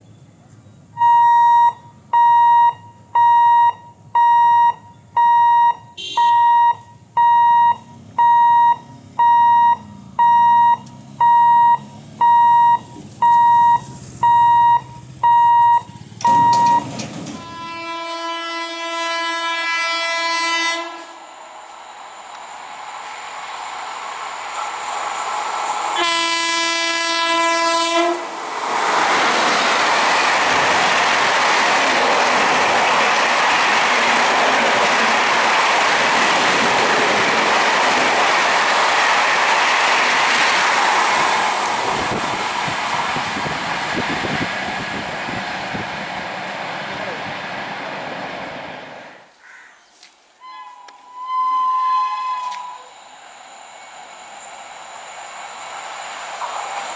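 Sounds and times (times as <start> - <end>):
approaching train running: 0.0 - 49.3, 50.4 - 56.9
level-crossing warning beeper: 1.0 - 17.8
train horn blasts: 6.0 - 6.4, 17.4 - 21.2, 25.9 - 28.3, 50.4 - 52.9.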